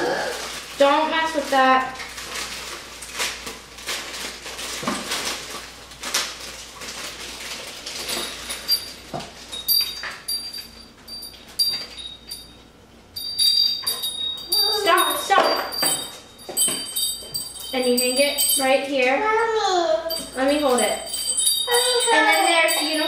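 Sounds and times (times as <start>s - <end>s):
metal chime rods ringing: 8.1s - 23.0s.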